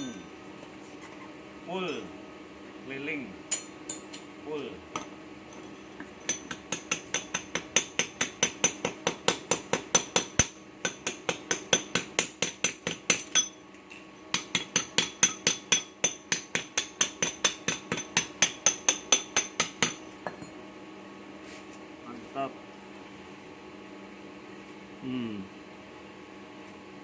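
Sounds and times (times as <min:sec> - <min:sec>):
hammer striking steel: 0:06.3 - 0:13.6, 0:14.3 - 0:20.5.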